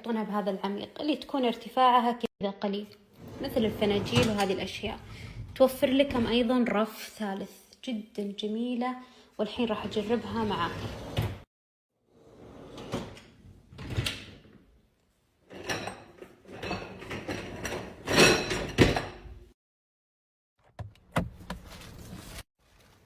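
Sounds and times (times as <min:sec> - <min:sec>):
dishwasher racks sliding and knocking: 0:03.2 - 0:05.6, 0:09.8 - 0:11.4, 0:12.2 - 0:14.6, 0:15.4 - 0:19.3.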